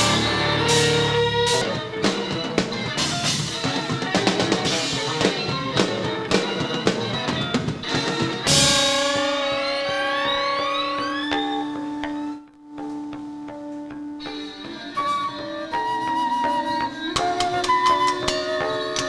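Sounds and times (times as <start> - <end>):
cymbal crash: 0.0 - 1.8, 8.5 - 11.9
rapid drumming: 0.0 - 10.8
rock band playing: 0.0 - 19.0.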